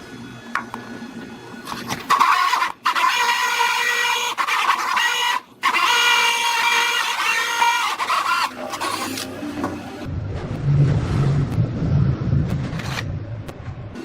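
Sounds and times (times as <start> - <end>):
power tool motor whining: 2.1 - 9.4.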